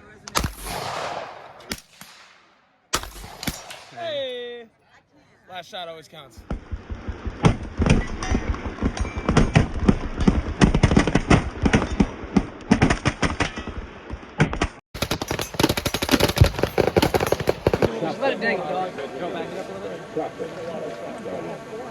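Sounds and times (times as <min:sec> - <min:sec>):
machine-gun fire: 0:00.4 - 0:04.0, 0:15.0 - 0:17.9.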